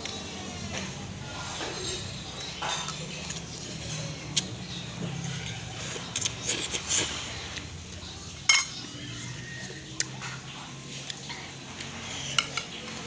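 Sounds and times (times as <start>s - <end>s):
metal cutlery clinking on bowl: 1.5s - 4.1s, 8.5s - 8.8s, 12.3s - 13.0s.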